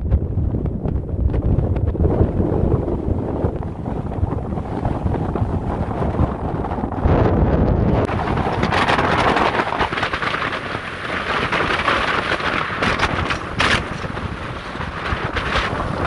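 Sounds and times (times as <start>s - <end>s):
wind buffeting microphone: 0.0s - 16.0s
short crackles: 8.1s - 16.0s.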